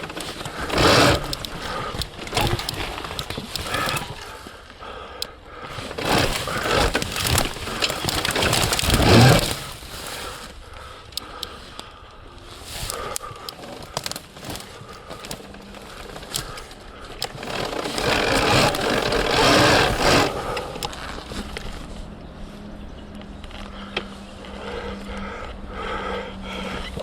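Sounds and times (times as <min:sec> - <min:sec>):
bike knocks and clatter: 0:00.0 - 0:04.4
electric motor hum: 0:00.0 - 0:04.7, 0:14.2 - 0:27.0.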